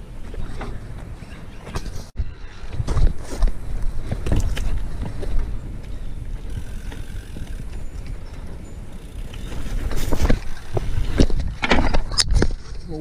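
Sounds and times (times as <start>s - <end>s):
bike rumbling over pavement: 0.0s - 12.8s
bike knocks: 2.8s - 12.6s.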